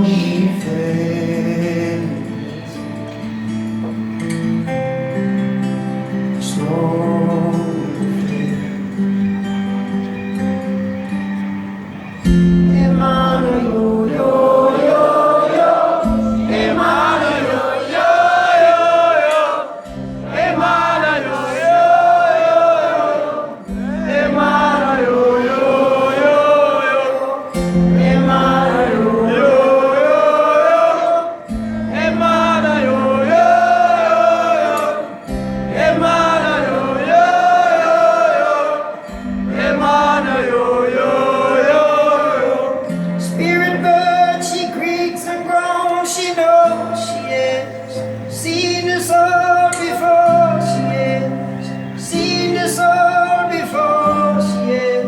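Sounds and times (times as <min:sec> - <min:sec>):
voices singing wordlessly: 0:12.2 - 0:55.0
live band music: 0:31.1 - 0:41.2.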